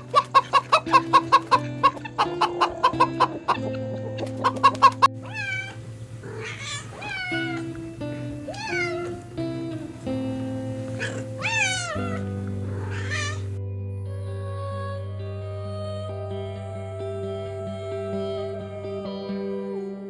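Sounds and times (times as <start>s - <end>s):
soft background music: 0.0s - 20.0s
cat meowing: 5.1s - 13.6s.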